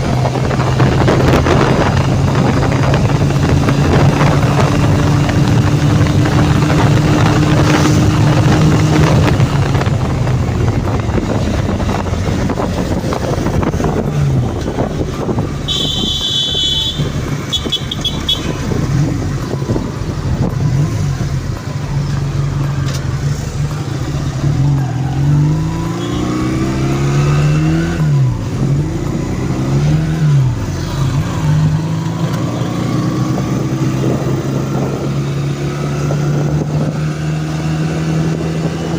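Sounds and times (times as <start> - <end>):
motorcycle engine revving: 0.0 - 38.9
vehicle horn beeping: 15.6 - 18.7, 25.9 - 26.6.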